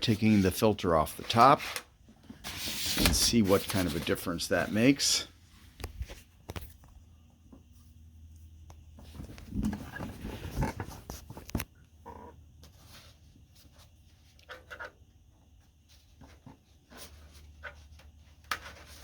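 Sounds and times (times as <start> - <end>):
scraping and rubbing of filter: 9.2 - 14.9.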